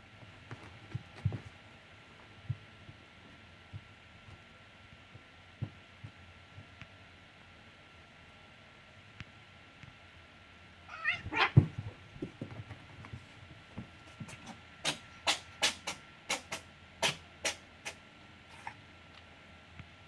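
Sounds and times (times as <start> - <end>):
pet whining: 10.9 - 11.8.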